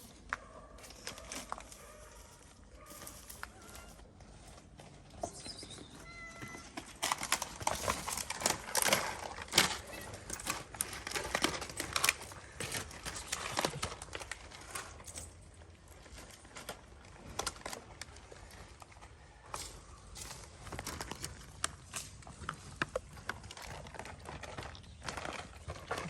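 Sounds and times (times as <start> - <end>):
cat food clicking and crackling: 0.1 - 4.8, 6.1 - 26.0
kitten meowing: 5.8 - 6.7.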